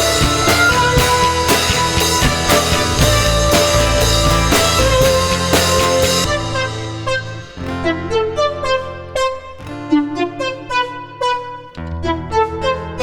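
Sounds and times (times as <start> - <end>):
steady drum beat: 0.0 - 7.9
held synth tones: 0.0 - 8.8
guitar: 0.0 - 13.0.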